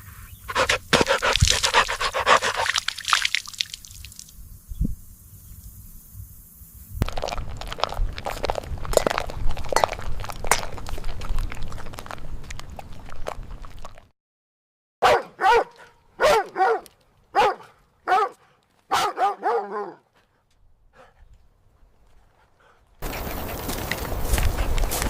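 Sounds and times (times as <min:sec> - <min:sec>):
crunching chewing: 0:00.5 - 0:04.2, 0:07.0 - 0:14.1, 0:22.4 - 0:25.0
dog barking high-pitched yips: 0:15.0 - 0:20.0.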